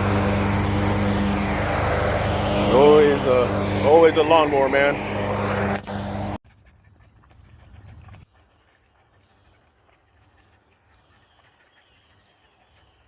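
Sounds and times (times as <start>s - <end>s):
lawnmower engine running: 0.0s - 6.4s
low engine hum: 0.0s - 8.3s.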